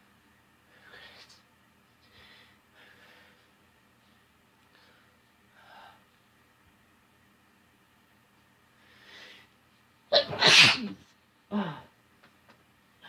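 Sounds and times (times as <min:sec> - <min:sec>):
person sneezing: 0:10.2 - 0:11.0.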